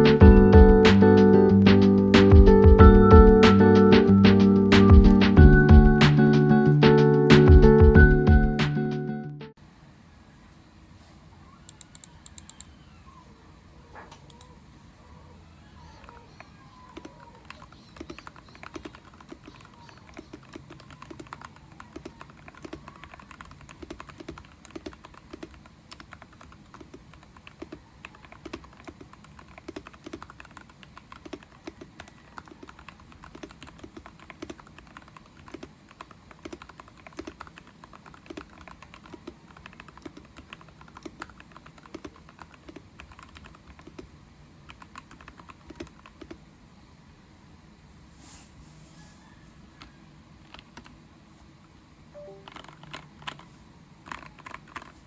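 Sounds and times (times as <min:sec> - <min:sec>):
mechanical keyboard typing: 0:16.8 - 0:44.1, 0:44.7 - 0:46.4, 0:50.4 - 0:51.0, 0:52.2 - 0:55.0.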